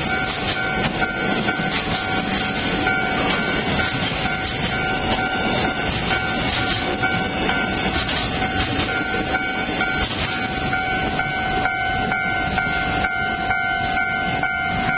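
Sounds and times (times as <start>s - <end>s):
clacks over rail joints: 0.0s - 10.8s
freight train rumbling past: 0.0s - 14.9s
steady high tone: 0.0s - 14.9s.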